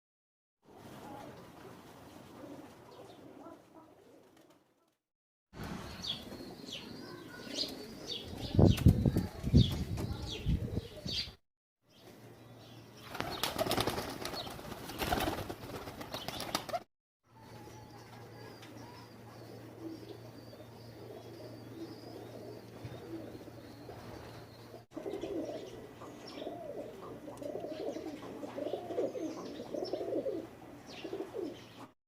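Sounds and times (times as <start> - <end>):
pigeons flapping wings: 4.2 - 4.9, 13.1 - 16.9.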